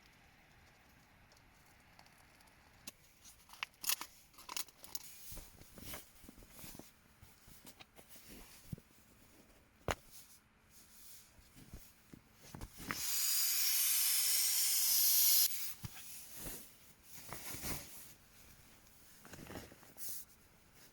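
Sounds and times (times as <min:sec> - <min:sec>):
rustling handling noise: 0:02.9 - 0:13.0, 0:15.5 - 0:20.9.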